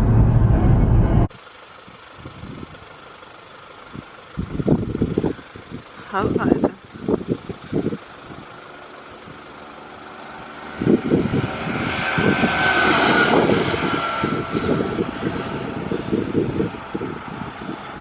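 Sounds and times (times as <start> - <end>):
wind rush on microphone: 3.9 - 8.6, 10.4 - 18.0.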